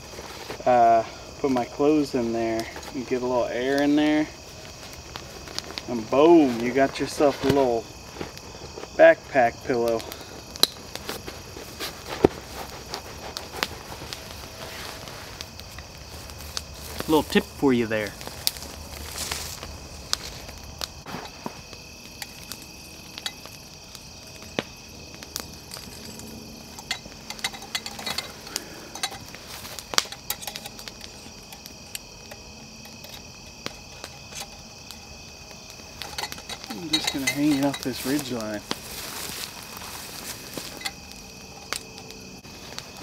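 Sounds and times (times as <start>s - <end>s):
crickets and insects chirring: 0.0s - 43.0s
gear rustling: 25.4s - 43.0s.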